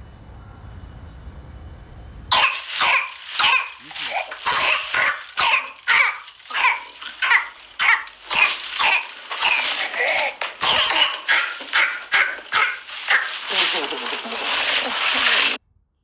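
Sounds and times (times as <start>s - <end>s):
child coughing rapidly: 2.3s - 15.6s.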